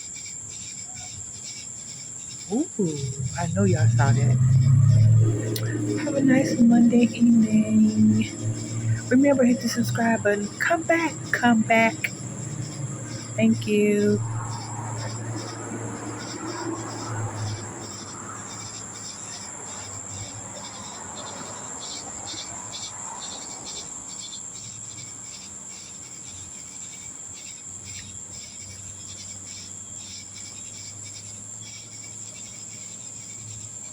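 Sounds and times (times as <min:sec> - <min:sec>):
crickets chirping: 0:00.0 - 0:33.9
high-pitched insect trill: 0:00.0 - 0:33.9
low steady hum: 0:02.5 - 0:16.3.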